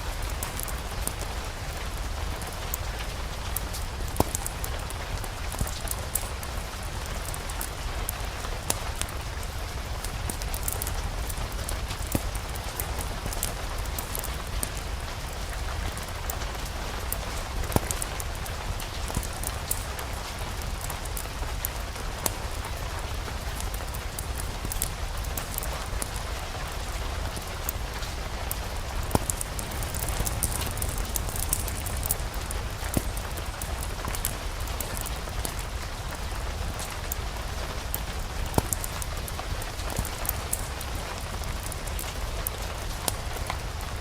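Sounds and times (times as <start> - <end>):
steady rain dripping: 0.0 - 44.0
wood fire crackling: 0.0 - 44.0
sharp pops of fire: 23.4 - 26.2, 27.3 - 43.6.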